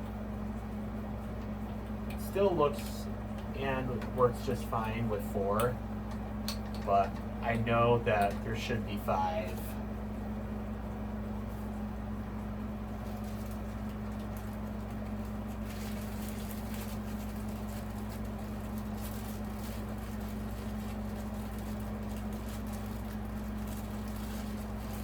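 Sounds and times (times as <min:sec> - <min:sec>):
ceiling fan motor hum: 0:00.0 - 0:25.0.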